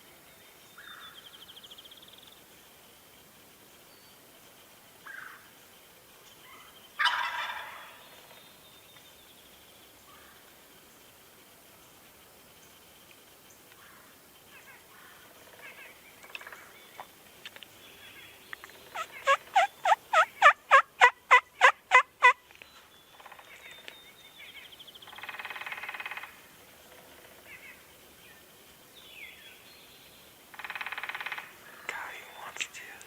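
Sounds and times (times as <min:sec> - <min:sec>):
wild turkey yelping: 0:06.5 - 0:08.0, 0:18.9 - 0:22.4
turkey rattling gobble: 0:07.0 - 0:08.0, 0:19.0 - 0:22.4.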